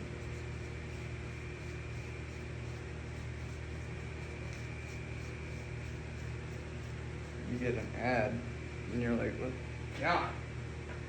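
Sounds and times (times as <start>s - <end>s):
mechanical hum: 0.0s - 11.0s.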